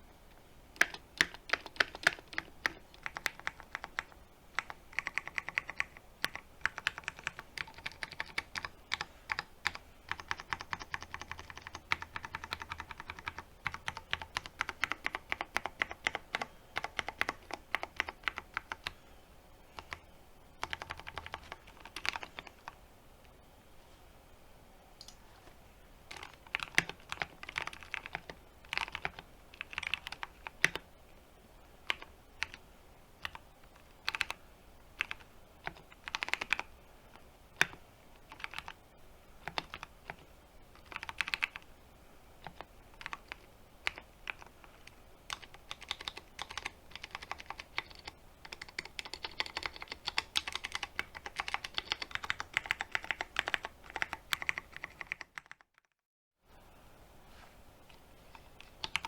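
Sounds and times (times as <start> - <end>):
typing on mechanical keyboard: 0.8 - 19.0, 20.6 - 22.8, 26.1 - 30.8, 31.9 - 32.6, 33.2 - 33.4, 34.0 - 34.4, 35.0 - 36.7, 37.6 - 38.8, 39.4 - 40.2, 40.8 - 41.6, 42.4 - 55.9, 58.6 - 59.0.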